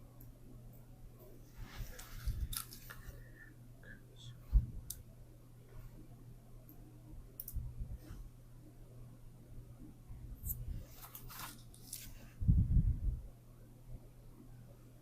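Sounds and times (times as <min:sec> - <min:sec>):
faint steady hum: 0:00.0 - 0:15.0
small clicks and rustles of handling: 0:00.2 - 0:03.2, 0:10.8 - 0:12.3.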